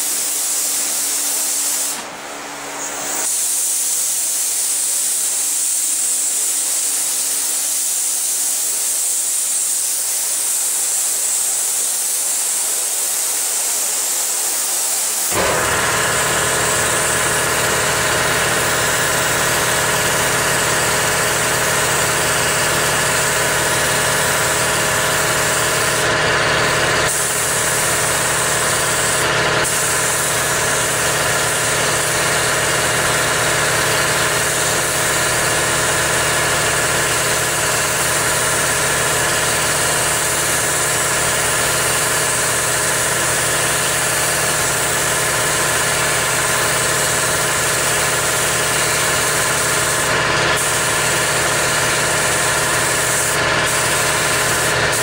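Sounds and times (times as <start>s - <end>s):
engine running: 15.3s - 55.0s.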